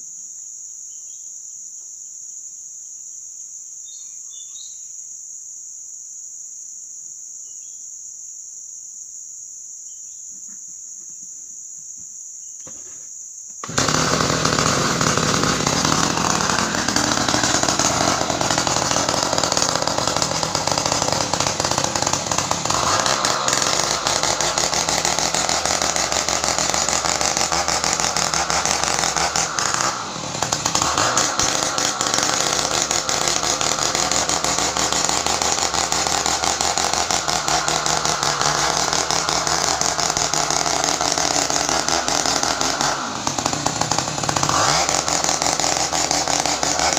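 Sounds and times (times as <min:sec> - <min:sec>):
crickets chirping: 0:00.0 - 0:13.6
chainsaw cutting wood: 0:13.6 - 0:46.9.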